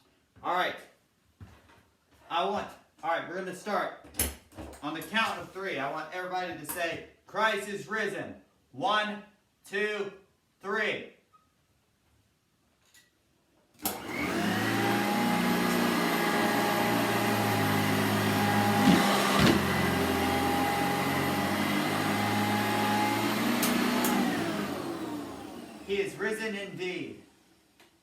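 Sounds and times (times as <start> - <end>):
upright vacuum cleaner running: 13.8 - 26.2.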